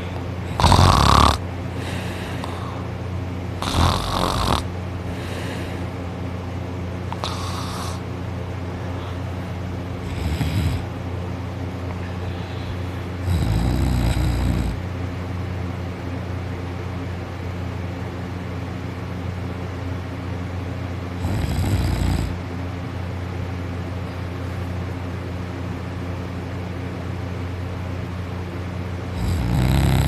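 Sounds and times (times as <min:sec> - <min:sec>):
steady low hum: 0:00.0 - 0:30.0
person snoring loudly: 0:00.5 - 0:02.8, 0:03.6 - 0:05.8, 0:07.1 - 0:08.0, 0:10.0 - 0:10.9, 0:13.2 - 0:14.8, 0:21.2 - 0:22.4, 0:29.1 - 0:30.0.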